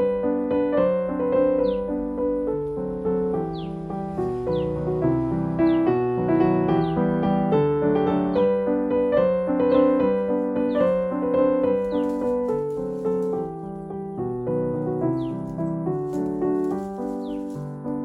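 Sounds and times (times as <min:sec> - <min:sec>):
piano-like keyboard music: 0:00.0 - 0:18.0.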